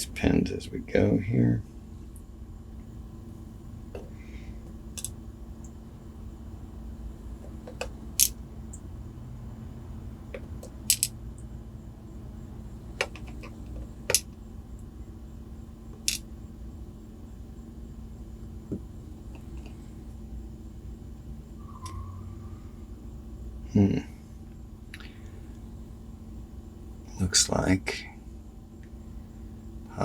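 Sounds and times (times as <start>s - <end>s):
padlock pins clicking: 7.6s - 8.4s, 10.4s - 11.1s, 13.0s - 14.3s, 16.0s - 16.2s.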